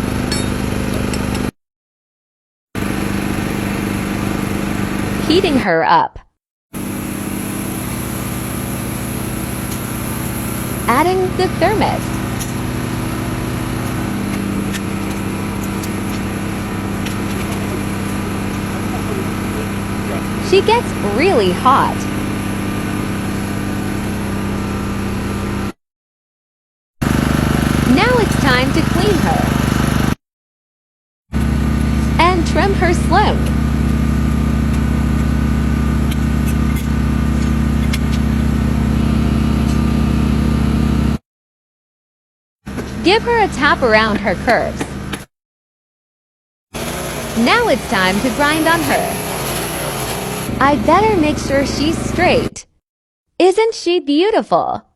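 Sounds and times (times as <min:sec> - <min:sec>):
small engine running: 0:02.8 - 0:05.6, 0:06.8 - 0:25.7, 0:27.0 - 0:30.2, 0:31.3 - 0:41.2, 0:42.7 - 0:45.3, 0:46.8 - 0:52.6.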